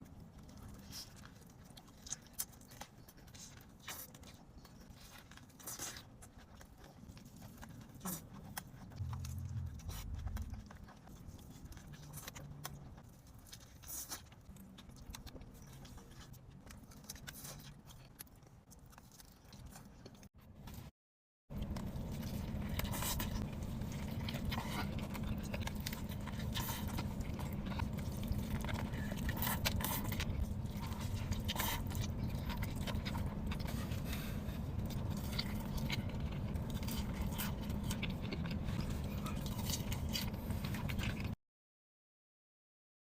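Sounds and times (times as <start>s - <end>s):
burger being chewed: 0.0s - 20.9s, 21.5s - 41.4s
low muffled rumble: 8.9s - 12.9s.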